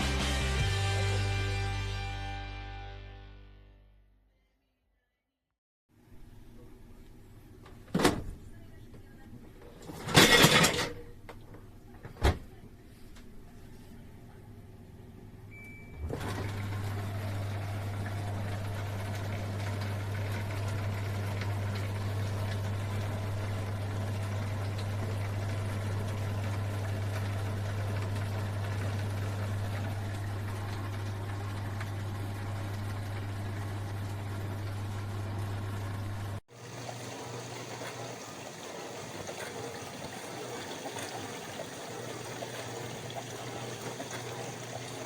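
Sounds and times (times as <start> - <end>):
dishwasher pump humming: 7.5 - 11.4, 15.5 - 45.0
dishwasher beep: 15.5 - 16.6
water spraying inside tub: 16.3 - 45.0.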